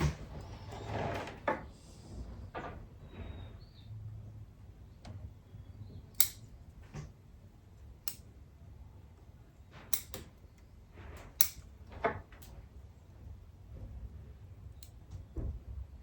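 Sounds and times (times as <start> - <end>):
low room rumble: 0.0 - 16.0
wire cutters snipping: 6.2 - 6.6, 8.0 - 8.3, 9.9 - 10.4, 11.3 - 11.7.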